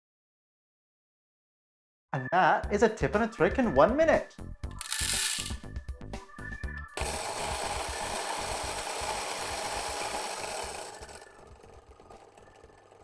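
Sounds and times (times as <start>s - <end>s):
electric coffee grinder whirring: 4.8s - 5.6s, 7.0s - 13.0s.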